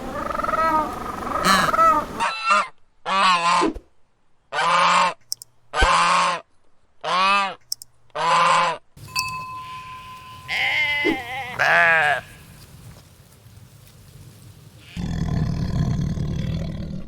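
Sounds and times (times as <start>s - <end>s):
goose honking: 0.0s - 3.6s, 8.2s - 8.8s, 10.4s - 12.7s
quavering animal bleats: 0.1s - 3.4s, 10.4s - 12.6s
faint steady hiss: 9.0s - 15.0s.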